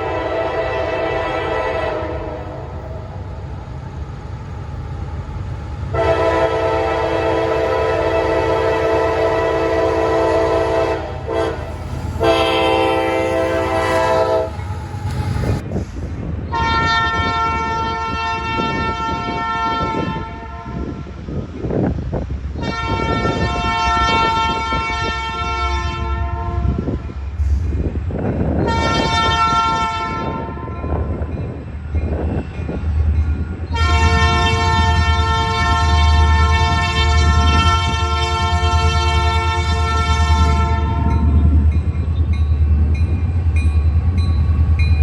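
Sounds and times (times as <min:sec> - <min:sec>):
locomotive air horn blasts: 0:00.0 - 0:02.6, 0:05.9 - 0:15.6, 0:16.5 - 0:21.0, 0:22.6 - 0:27.0, 0:28.6 - 0:31.1, 0:33.7 - 0:41.3
train rumbling and clattering: 0:00.0 - 0:45.0.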